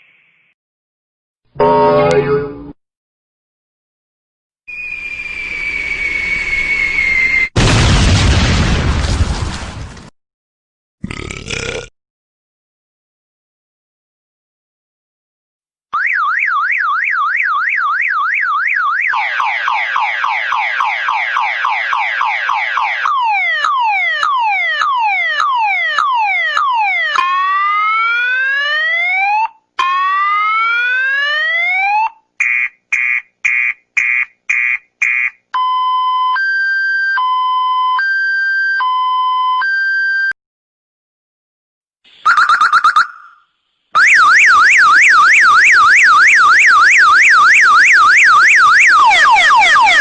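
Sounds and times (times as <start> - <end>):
car alarm siren: 15.9 - 40.4, 42.1 - 50.0.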